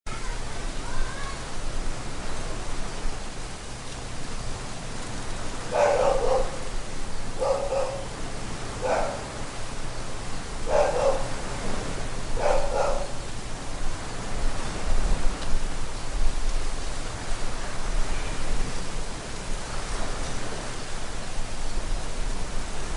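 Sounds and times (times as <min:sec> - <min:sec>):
wind: 0:00.0 - 0:22.9
beach surf: 0:00.1 - 0:22.9
dog barking: 0:05.7 - 0:06.7, 0:07.4 - 0:08.1, 0:08.8 - 0:09.4, 0:10.7 - 0:11.4, 0:12.4 - 0:13.2.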